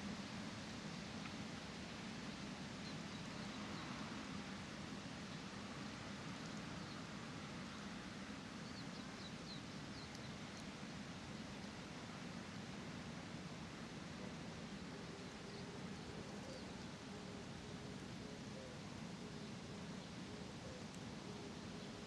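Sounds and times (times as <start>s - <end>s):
small birds chirping: 8.5s - 11.6s.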